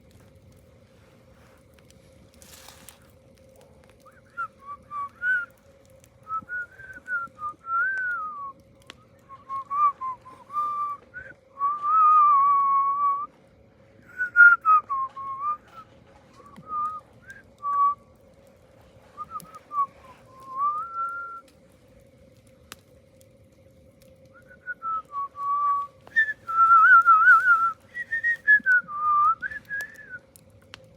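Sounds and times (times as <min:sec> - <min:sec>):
faint steady hum: 0:00.0 - 0:30.9
person whistling a tune: 0:04.1 - 0:05.5, 0:06.2 - 0:13.3, 0:14.0 - 0:15.8, 0:16.4 - 0:18.0, 0:19.2 - 0:21.4, 0:24.3 - 0:30.2.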